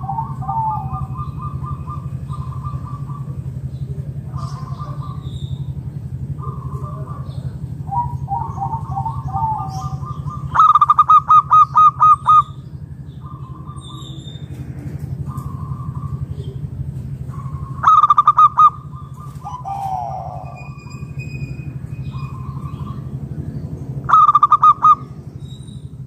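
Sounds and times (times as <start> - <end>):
doves cooing: 0.0 - 26.0
low pulsing hum: 0.0 - 26.0.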